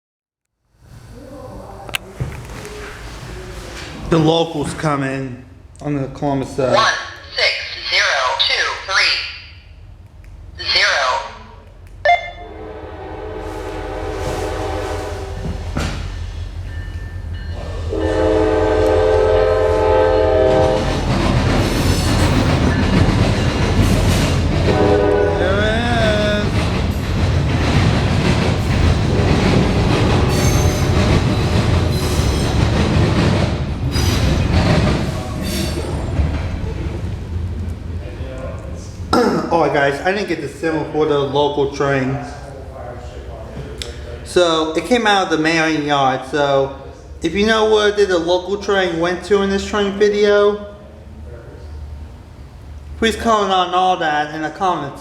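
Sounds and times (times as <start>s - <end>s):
locomotive engine rumble: 1.0s - 44.5s
train air horn: 12.1s - 16.0s, 17.8s - 21.0s, 24.7s - 26.4s, 28.9s - 32.6s
wheels clattering over rails: 20.5s - 39.1s.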